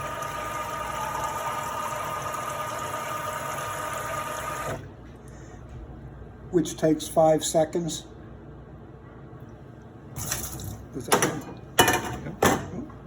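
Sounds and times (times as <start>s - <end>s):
pump whining: 0.0s - 4.9s.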